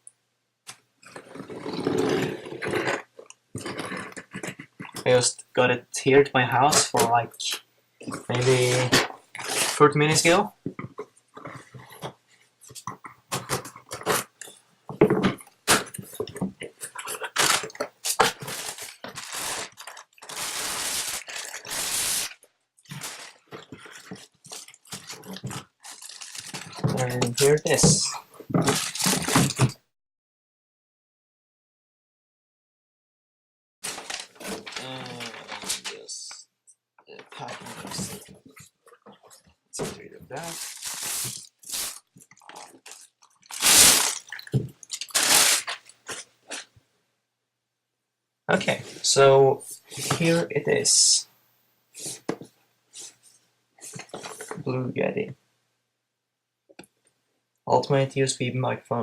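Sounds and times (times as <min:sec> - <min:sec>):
cardboard scraping and tearing: 0:01.2 - 0:04.8, 0:08.2 - 0:09.8, 0:15.7 - 0:28.0, 0:28.6 - 0:29.8, 0:33.8 - 0:36.1, 0:37.3 - 0:38.4, 0:39.8 - 0:46.6
packaging rustling: 0:08.1 - 0:10.4, 0:15.7 - 0:29.8, 0:33.8 - 0:36.1, 0:37.2 - 0:46.6.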